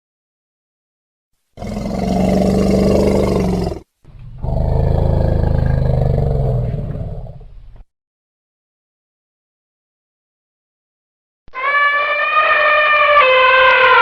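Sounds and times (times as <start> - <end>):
elephant calling: 11.5 - 14.0.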